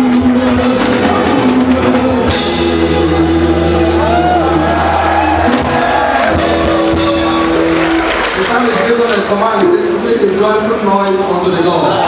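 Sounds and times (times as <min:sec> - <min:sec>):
band music with drums: 0:00.0 - 0:12.0.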